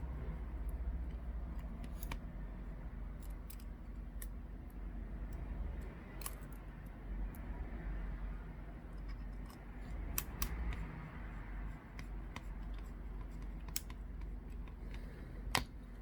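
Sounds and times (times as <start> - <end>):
small screwdriver clicking on screws: 9.0 - 10.9, 12.0 - 15.7.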